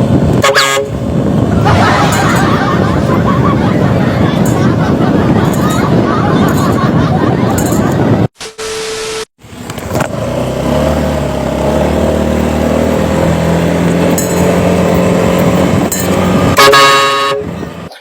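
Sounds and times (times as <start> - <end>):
vehicle running: 0.0 - 8.3, 9.4 - 18.0
loud vehicle horn blast: 0.4 - 1.0, 16.5 - 17.7.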